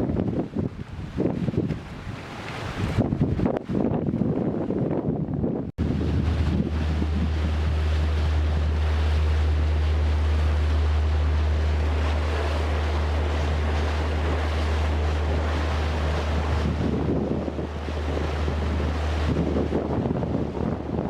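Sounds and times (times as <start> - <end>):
rushing sea water: 0.0 - 21.0
wind buffeting microphone: 0.0 - 21.0
boat engine droning: 5.8 - 21.0.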